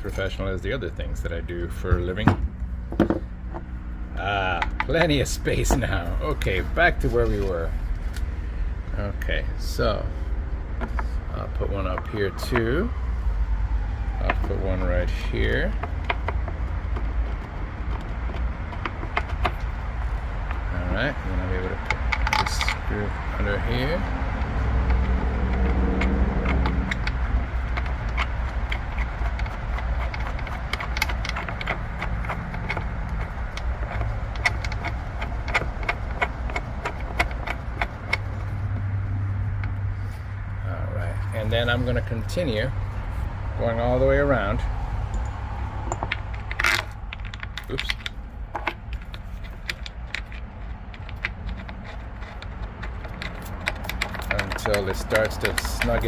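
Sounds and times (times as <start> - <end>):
low rumble: 0.0 - 51.4
metallic clicks of parts handled: 21.7 - 23.9, 45.0 - 56.0.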